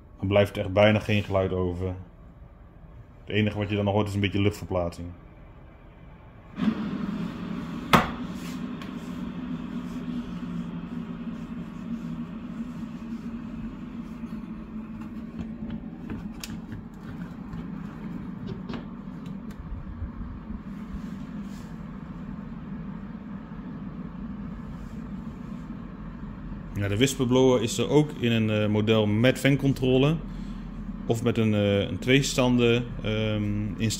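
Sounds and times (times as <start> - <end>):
duct fan humming: 0.0 - 33.9
sharp knock: 7.9 - 8.2.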